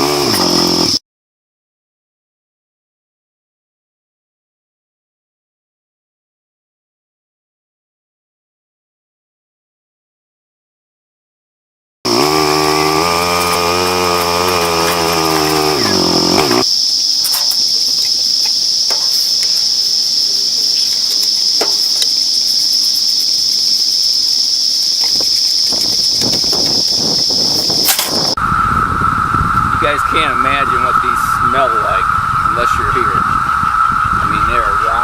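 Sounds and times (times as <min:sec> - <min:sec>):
cicadas droning: 0:00.0 - 0:01.0, 0:12.1 - 0:35.0
engine running: 0:00.0 - 0:01.0, 0:12.1 - 0:22.8.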